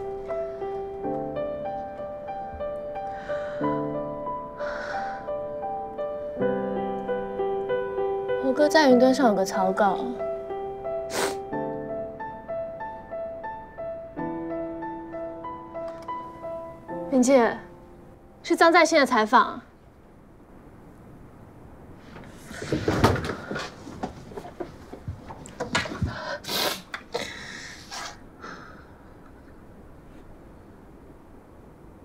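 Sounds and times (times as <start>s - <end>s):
soft piano music: 0.0s - 20.6s
short hiss: 11.1s - 11.5s, 26.4s - 28.2s.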